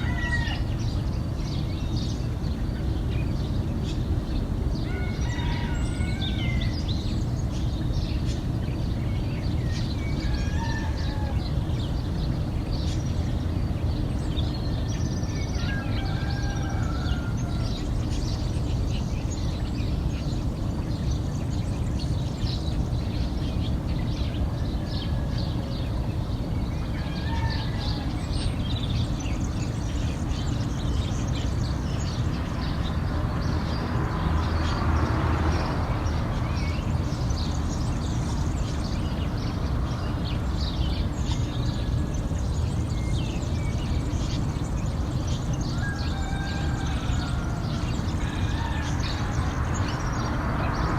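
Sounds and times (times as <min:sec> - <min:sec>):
small birds chirping: 0:00.0 - 0:50.9.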